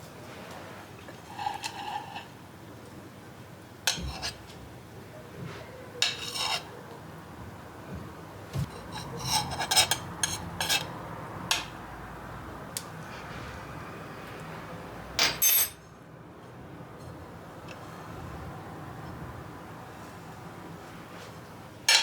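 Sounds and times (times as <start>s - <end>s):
dishes and cutlery clinking: 8.6s - 10.9s, 15.2s - 15.8s.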